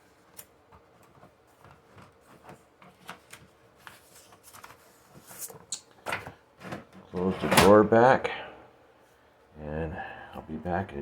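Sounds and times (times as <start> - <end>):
paper rustling: 0.2 - 5.7.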